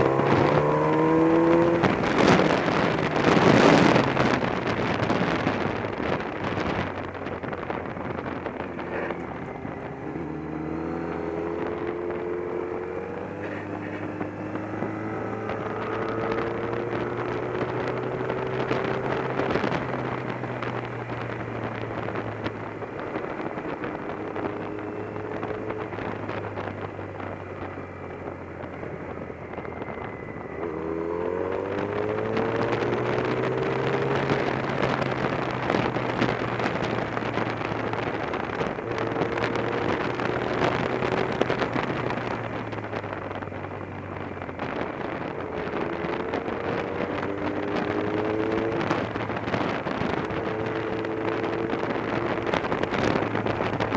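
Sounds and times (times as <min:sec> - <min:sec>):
motorcycle engine revving: 0:00.0 - 0:53.9
wind noise on microphone: 0:00.0 - 0:53.9.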